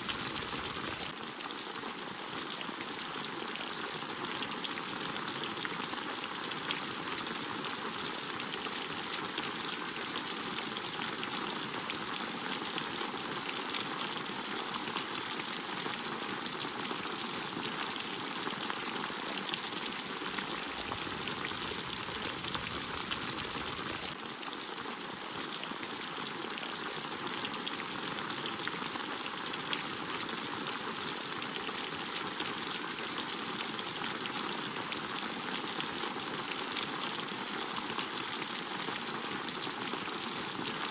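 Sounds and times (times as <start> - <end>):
rain falling: 0.0 - 1.1, 19.4 - 24.2.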